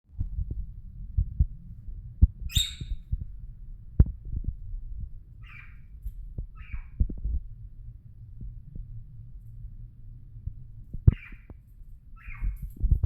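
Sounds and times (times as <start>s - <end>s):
low knocks and thumps: 0.1s - 9.1s, 10.4s - 11.6s, 12.7s - 13.0s
parrot squawking: 2.5s - 2.9s, 5.4s - 5.9s, 6.6s - 7.0s, 11.1s - 11.5s, 12.2s - 12.6s.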